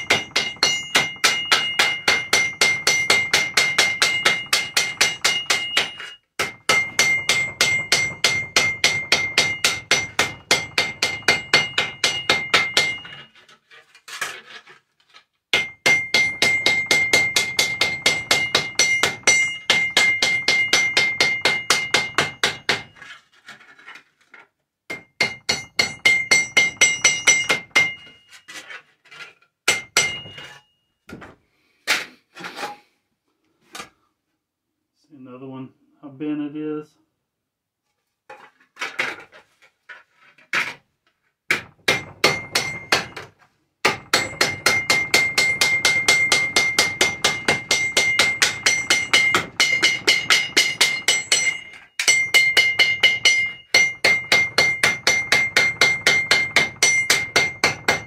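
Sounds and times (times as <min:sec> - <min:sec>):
hammer striking tin cans: 0:00.0 - 0:13.4, 0:15.5 - 0:23.2, 0:24.9 - 0:28.7, 0:29.6 - 0:32.8, 0:41.5 - 0:58.0.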